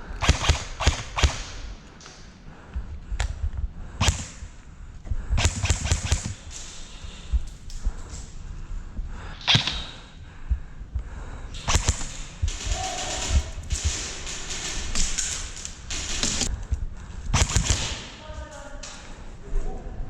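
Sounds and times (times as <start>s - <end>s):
airsoft gun shots: 0.2s - 1.7s, 4.0s - 4.5s, 5.4s - 7.2s, 9.4s - 10.1s, 11.5s - 16.6s, 17.3s - 18.2s
dull low knocks: 10.0s - 17.8s.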